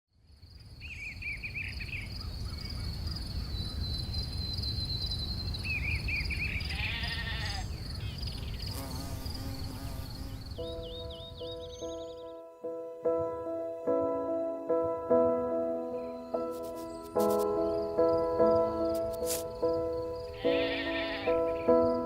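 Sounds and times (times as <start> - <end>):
insect drone: 0.2 - 10.8, 16.4 - 22.0
birds chirping: 0.6 - 22.0
sheep bleating: 6.7 - 7.7, 20.4 - 21.7.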